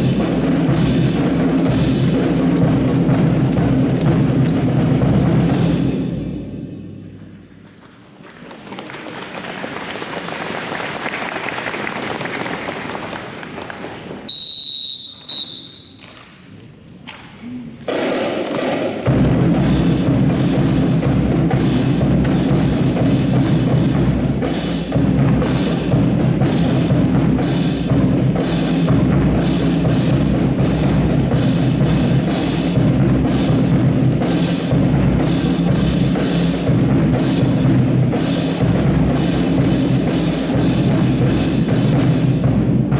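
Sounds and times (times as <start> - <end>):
drum-heavy music: 0.0 - 6.5, 17.9 - 42.9.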